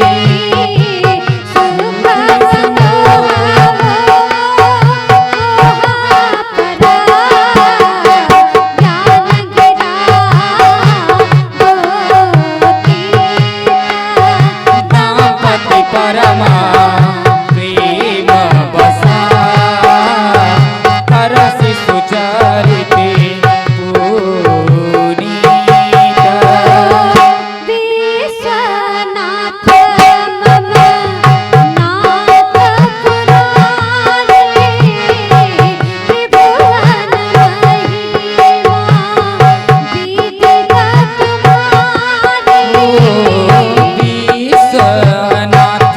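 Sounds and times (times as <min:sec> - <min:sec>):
tabla rhythm: 0:00.0 - 0:45.9
bending melody line: 0:42.5 - 0:45.9.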